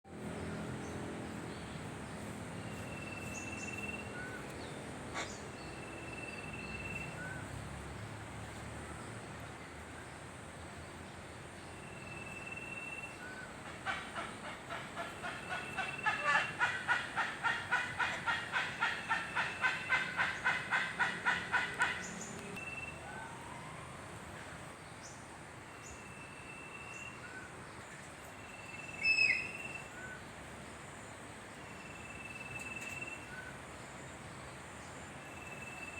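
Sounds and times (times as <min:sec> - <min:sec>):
rapid rhythmic bird calls: 0:00.4 - 0:07.6, 0:10.9 - 0:23.0.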